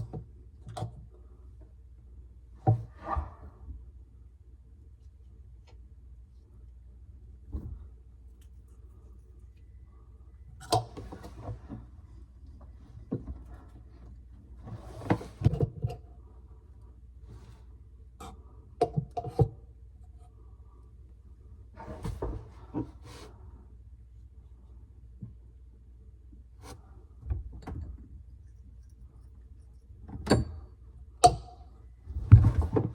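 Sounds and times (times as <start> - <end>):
steady low hum: 19.9 - 32.9.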